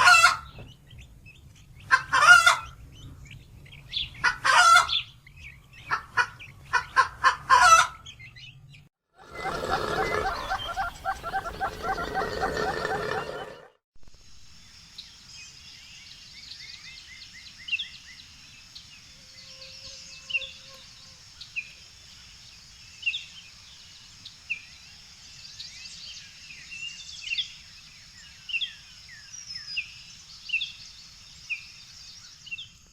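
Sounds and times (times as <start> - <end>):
birds chirping: 0.0 - 13.8.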